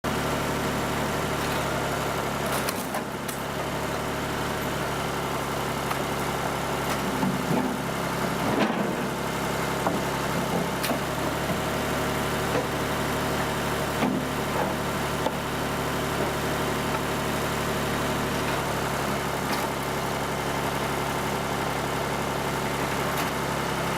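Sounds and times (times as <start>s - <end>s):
log splitter humming: 0.1s - 23.9s
sharp knocks and cracks: 2.5s - 3.4s.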